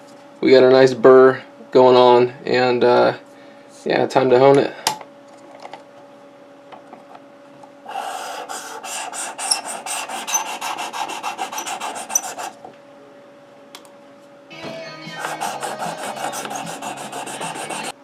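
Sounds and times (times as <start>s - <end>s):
sharpening stone rasping on knife edge: 9.0s - 12.5s.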